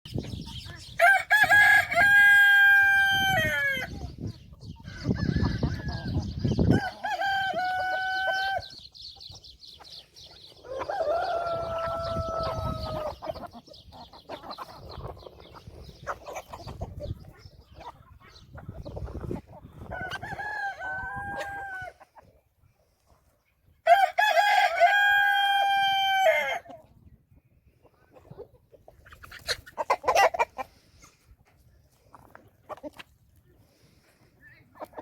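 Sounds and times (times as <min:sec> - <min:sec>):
hens clucking: 0:00.1 - 0:23.7, 0:25.0 - 0:35.0
roosters crowing: 0:00.9 - 0:04.1, 0:04.8 - 0:08.8, 0:10.6 - 0:13.4, 0:19.8 - 0:22.0, 0:23.8 - 0:26.7.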